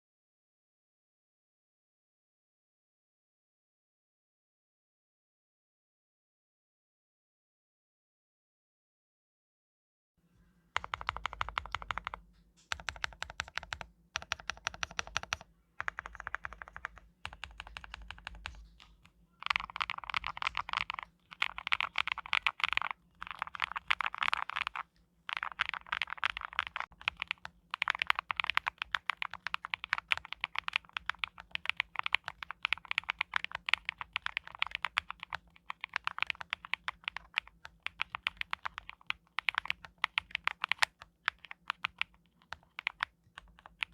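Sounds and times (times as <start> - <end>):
typing on mechanical keyboard: 10.8 - 43.9.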